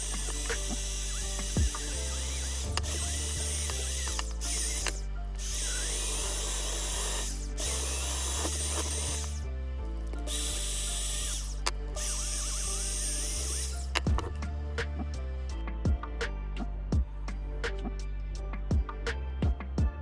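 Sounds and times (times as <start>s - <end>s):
power drill running: 0.0s - 14.4s
background music: 0.0s - 20.0s.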